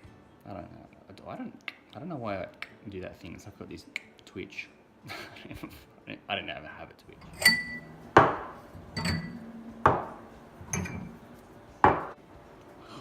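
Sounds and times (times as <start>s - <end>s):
dishes and glassware clinking: 7.2s - 12.2s.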